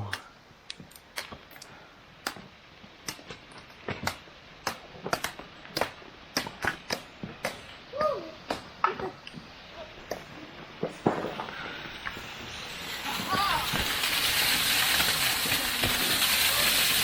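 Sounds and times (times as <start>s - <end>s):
ice being pounded: 13.0s - 17.0s.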